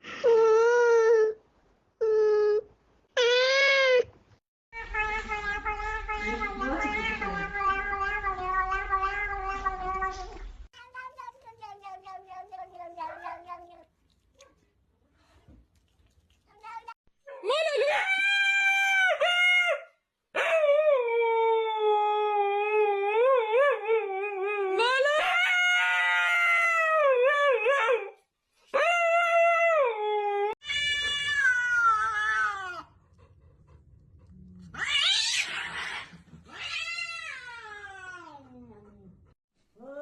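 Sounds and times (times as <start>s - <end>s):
cats yowling: 4.8s - 10.5s, 12.0s - 13.8s, 30.6s - 32.9s, 34.7s - 38.4s.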